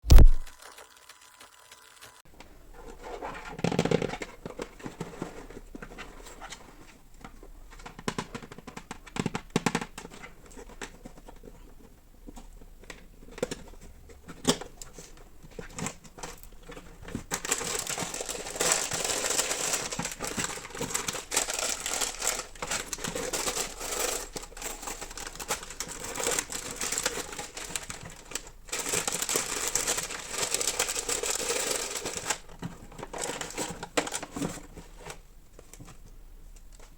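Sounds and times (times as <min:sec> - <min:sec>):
plastic packaging crinkling: 0:14.5 - 0:34.8.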